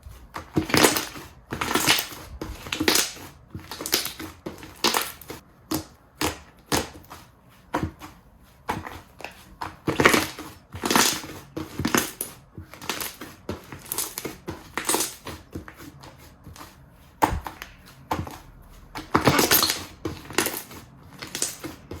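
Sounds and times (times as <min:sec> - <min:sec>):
slime squishing: 0:00.0 - 0:22.0.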